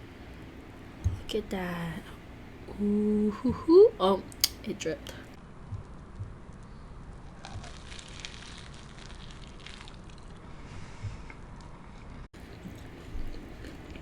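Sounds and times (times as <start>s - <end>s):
chewing crunchy snack: 7.3s - 10.4s, 11.9s - 14.0s.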